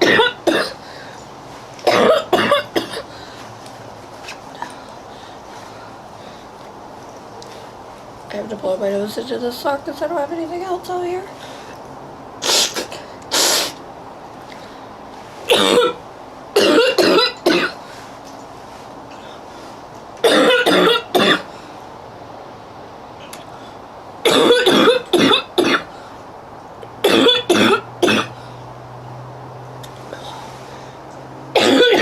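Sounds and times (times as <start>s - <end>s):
girl coughing: 0.0s - 0.8s, 1.9s - 3.1s, 15.5s - 16.0s, 16.6s - 17.8s, 20.2s - 21.5s, 24.2s - 25.9s, 27.0s - 28.4s, 31.6s - 32.0s.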